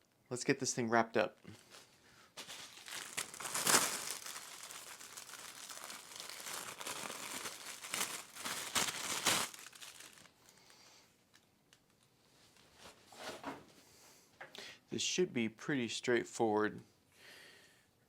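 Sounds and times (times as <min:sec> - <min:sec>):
packaging crinkling and tearing: 0:01.6 - 0:10.6.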